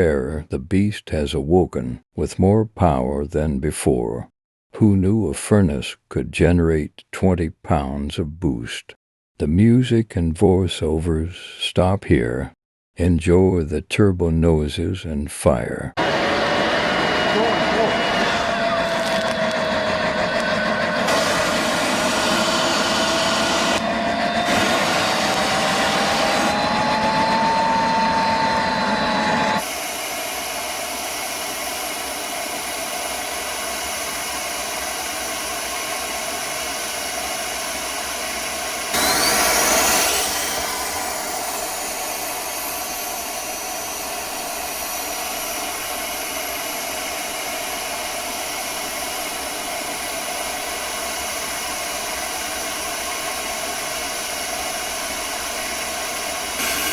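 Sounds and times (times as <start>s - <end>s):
turbo whine: 16.0s - 56.9s
high whistle: 23.8s - 29.9s, 38.9s - 47.2s, 55.9s - 56.9s.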